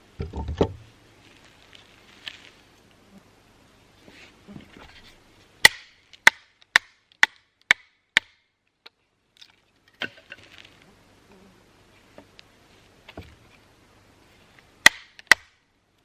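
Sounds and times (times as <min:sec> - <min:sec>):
wood chopping strikes: 0:05.6 - 0:08.4, 0:14.8 - 0:15.6.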